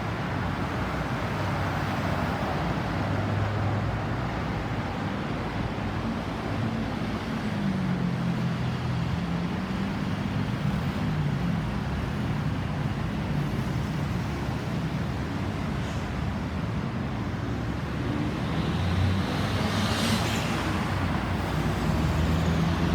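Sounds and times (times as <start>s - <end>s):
vehicle engines humming: 18.7s - 22.9s.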